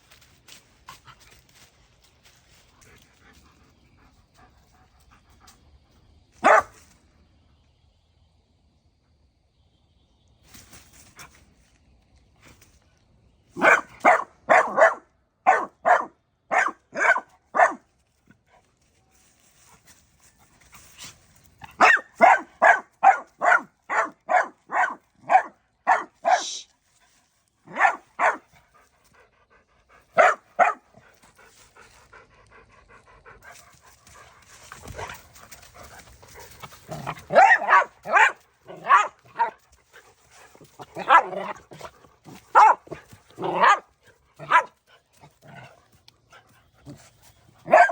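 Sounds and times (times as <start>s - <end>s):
dog barking: 6.4s - 6.8s, 13.6s - 17.8s, 21.8s - 26.6s, 27.7s - 28.5s, 30.2s - 30.9s, 37.0s - 39.6s, 41.0s - 41.6s, 42.5s - 44.8s, 47.6s - 47.9s.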